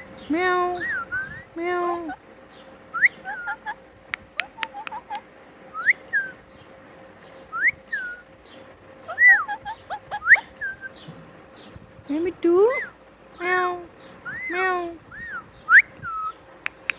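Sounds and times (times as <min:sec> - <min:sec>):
parrot whistled chirps: 0:00.8 - 0:02.2, 0:02.9 - 0:06.4, 0:07.5 - 0:08.3, 0:09.1 - 0:11.0, 0:14.2 - 0:16.9
sharp clicks: 0:04.1 - 0:05.1, 0:16.6 - 0:16.9.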